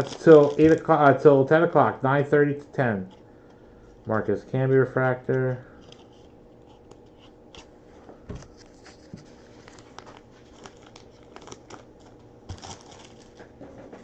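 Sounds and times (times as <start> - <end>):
card pack wrapper crinkling: 0.0 - 1.2, 8.5 - 13.6.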